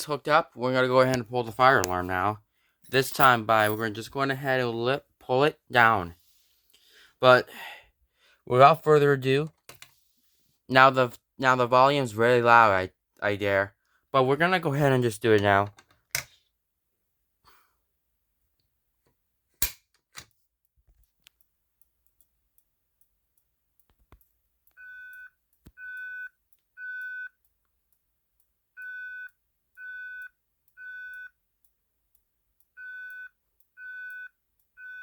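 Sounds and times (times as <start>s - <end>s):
fire alarm beeping: 24.8s - 27.4s, 28.8s - 31.4s, 32.8s - 35.0s.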